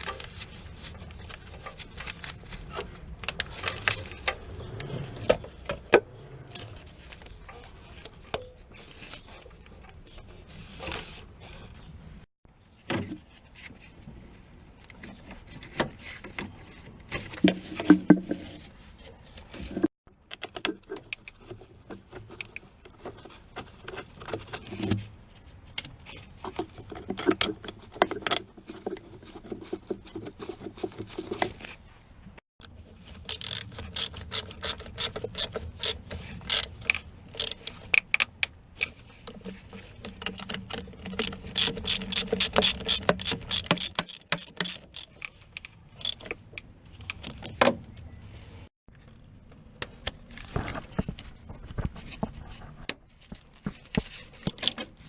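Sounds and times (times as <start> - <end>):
ratchet wrench clicking: 41.2 - 45.2.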